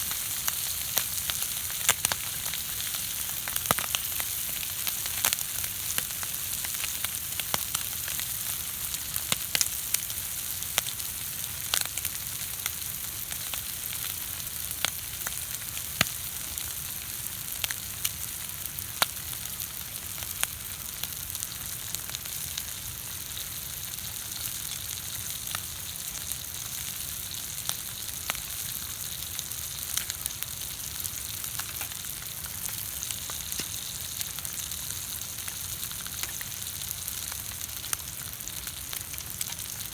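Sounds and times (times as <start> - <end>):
sharp pops and crackles: 0.0 - 8.2, 31.0 - 39.9
food sizzling in a hot pan: 0.0 - 39.9.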